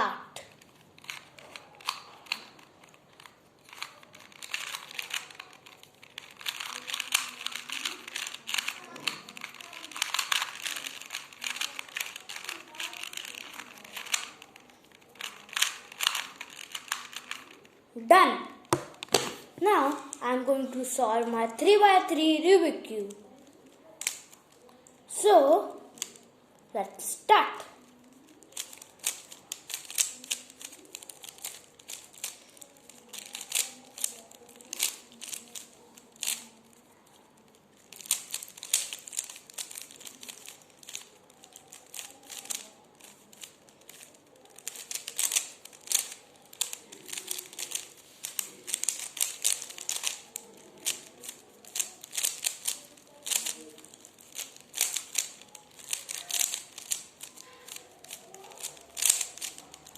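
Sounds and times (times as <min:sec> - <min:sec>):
puzzle cube plastic clicks: 0:00.3 - 0:17.8, 0:18.6 - 0:21.8, 0:23.0 - 0:26.3, 0:27.8 - 0:59.9.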